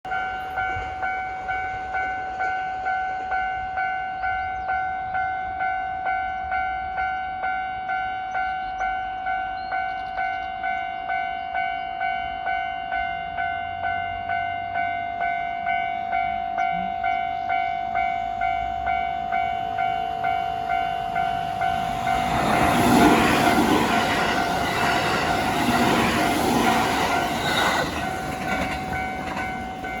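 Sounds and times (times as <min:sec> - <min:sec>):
train rushing past: 0:16.8 - 0:30.0
rail clatter: 0:18.5 - 0:30.0.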